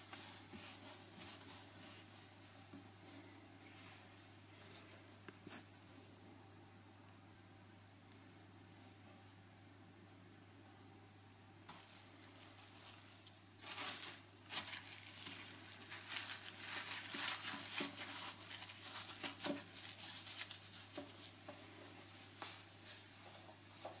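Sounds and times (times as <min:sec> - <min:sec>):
food wrapping crinkling: 0:11.7 - 0:23.0.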